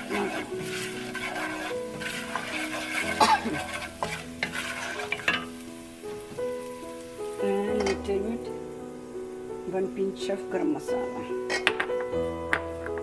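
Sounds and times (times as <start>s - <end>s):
spoon scraping and clinking a pot: 0.0s - 5.6s, 11.4s - 12.6s
spices sizzling in hot oil: 0.0s - 13.0s.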